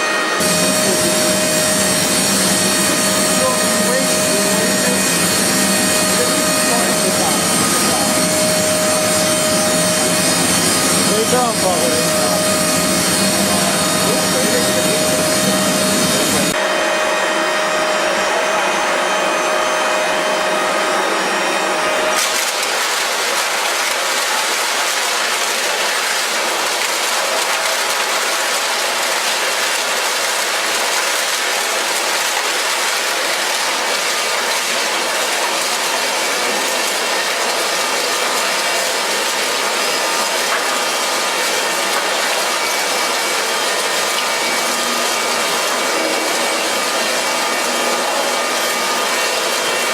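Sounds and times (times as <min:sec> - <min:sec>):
high humming tones: 0:00.0 - 0:24.5.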